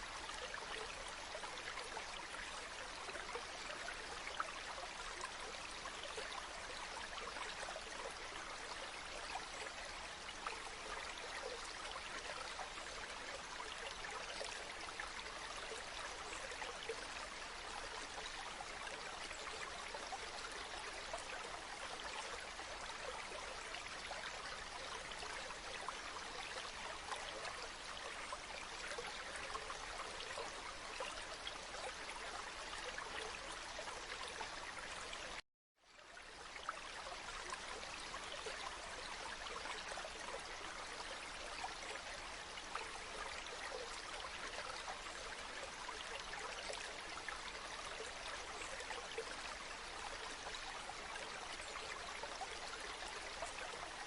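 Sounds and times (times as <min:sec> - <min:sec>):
river water flowing over stones: 0:36.0 - 0:54.0.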